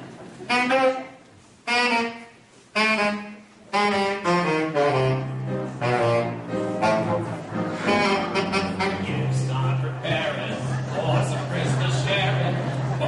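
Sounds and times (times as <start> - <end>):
saxophone playing: 0.4 - 9.7.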